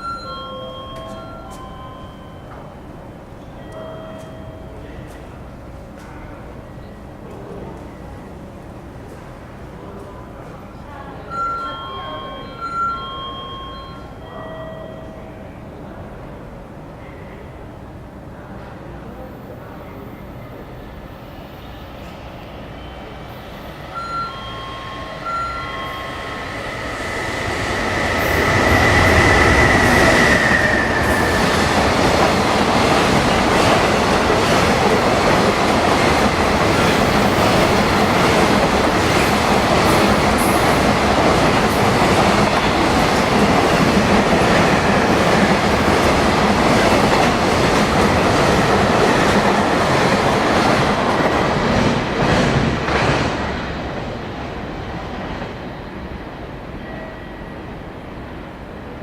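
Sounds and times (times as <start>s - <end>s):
freight train passing: 0.0s - 59.0s
steady high tone: 22.7s - 44.0s.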